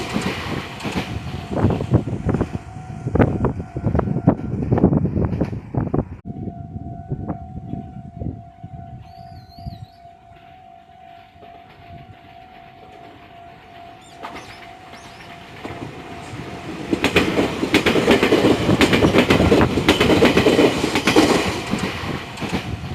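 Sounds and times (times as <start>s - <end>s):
train wheels clattering: 0.0s - 2.6s, 10.3s - 22.9s
electric train passing: 0.0s - 22.9s
crossing signal tone: 1.2s - 5.0s, 6.3s - 16.6s.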